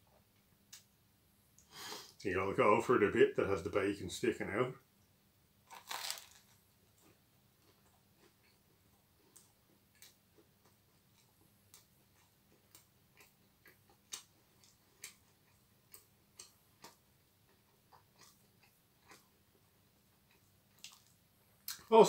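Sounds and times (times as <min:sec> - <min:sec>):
person chewing food: 0:05.7 - 0:21.9.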